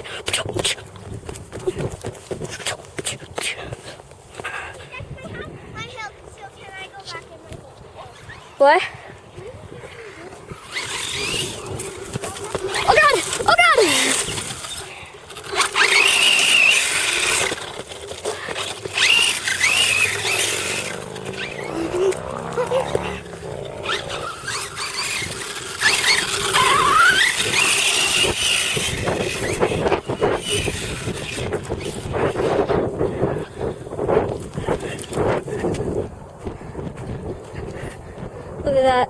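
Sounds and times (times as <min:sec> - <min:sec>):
electric toy car motor whirring: 0:10.1 - 0:32.6
high-pitched squeals and shrieks: 0:19.0 - 0:28.3.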